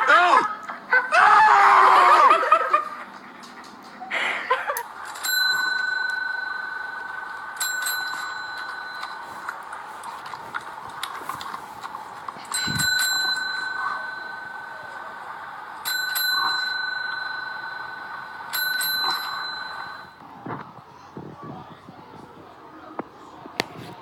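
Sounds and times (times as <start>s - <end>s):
bell ringing: 4.8s - 11.6s, 12.2s - 20.2s.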